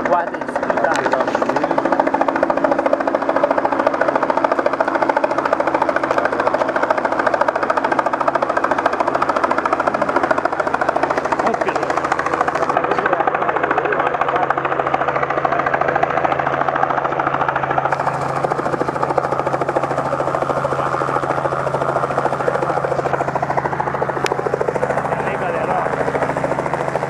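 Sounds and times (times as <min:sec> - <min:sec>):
helicopter engine hum: 0:00.0 - 0:27.0
helicopter rotor chopping: 0:00.0 - 0:27.0.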